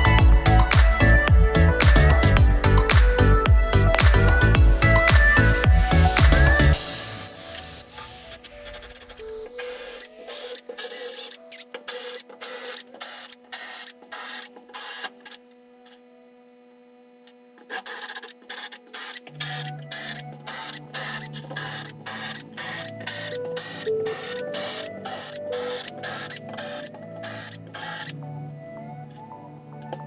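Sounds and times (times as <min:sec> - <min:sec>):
stepper motors whining: 0:19.1 - 0:30.0.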